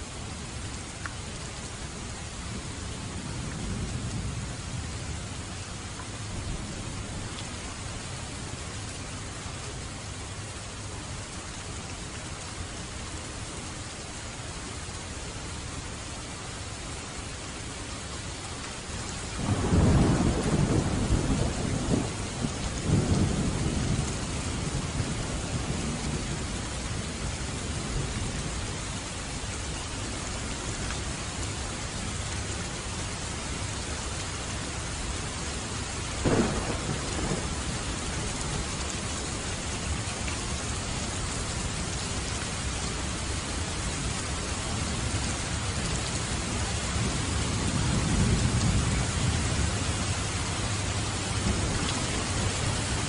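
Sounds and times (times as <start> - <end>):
heavy rain: 0.0 - 53.0
thunder rumbling: 19.4 - 26.5, 36.2 - 40.1, 44.8 - 53.0
sharp thunderclap: 36.2 - 37.7.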